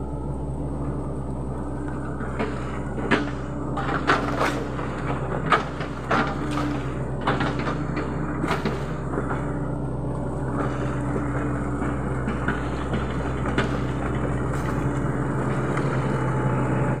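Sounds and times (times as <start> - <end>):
excavator diesel engine running: 0.0 - 17.0
sharp knocks and cracks: 2.1 - 9.6, 10.6 - 16.1.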